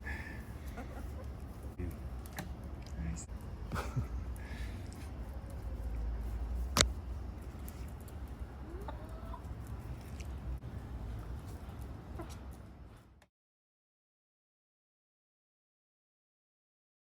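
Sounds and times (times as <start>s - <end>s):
steady low rumble: 0.0s - 13.2s
chicken clucking: 0.4s - 1.9s, 8.4s - 10.3s, 11.5s - 12.6s.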